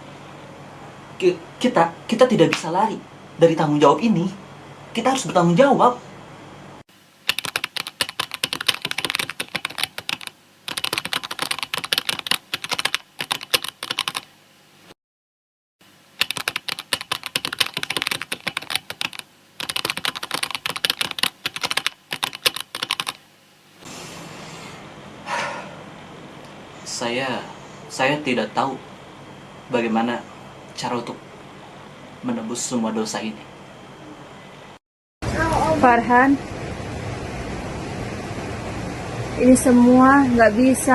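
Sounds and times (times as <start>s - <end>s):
computer keyboard typing: 7.3s - 14.3s, 16.2s - 23.2s.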